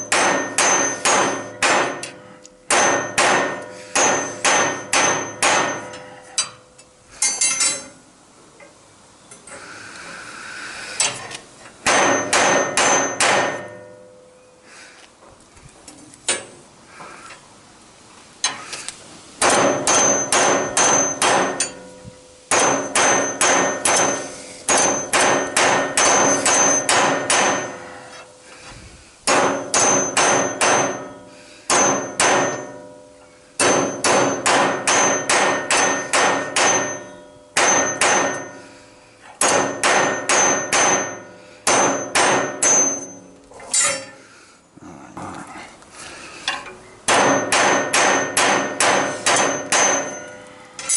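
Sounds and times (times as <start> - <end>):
hammer striking metal: 0.0 - 6.6, 11.8 - 14.2, 19.4 - 27.9, 29.3 - 38.7, 39.4 - 44.2, 47.1 - 50.9.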